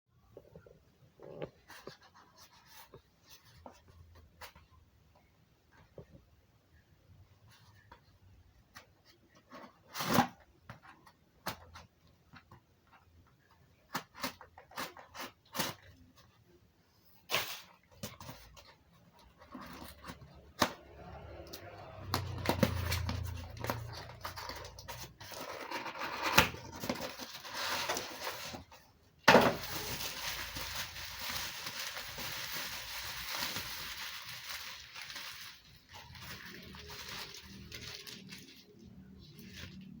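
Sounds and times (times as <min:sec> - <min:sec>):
packaging rustling: 0:22.0 - 0:40.0
packaging crinkling: 0:22.3 - 0:40.0.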